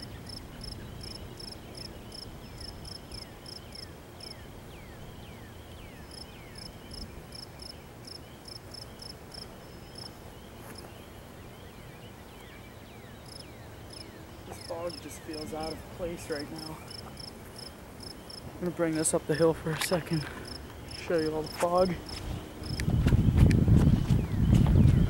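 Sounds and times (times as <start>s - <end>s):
steady low background noise: 0.0s - 25.0s.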